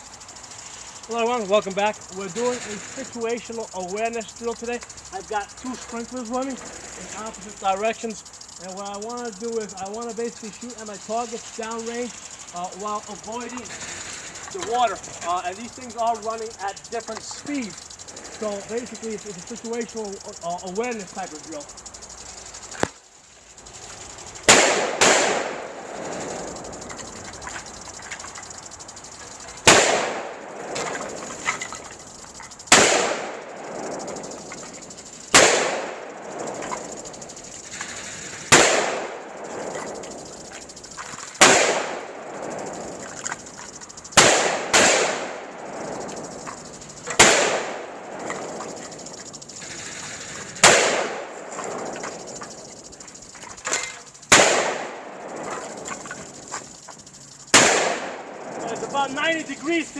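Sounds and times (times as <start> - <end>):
steady hiss: 0.0 - 59.9
rifle shots with echo: 24.5 - 25.8, 29.6 - 30.6, 32.7 - 33.7, 35.3 - 36.3, 38.5 - 39.4, 41.4 - 42.3, 44.2 - 45.6, 47.2 - 48.3, 50.6 - 51.5, 54.3 - 56.0, 57.5 - 58.6.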